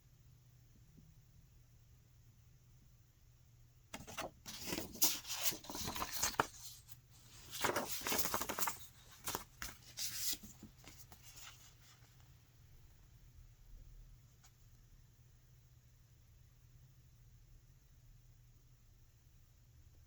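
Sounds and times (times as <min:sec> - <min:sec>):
paper rustling and crinkling: 0:04.0 - 0:12.2.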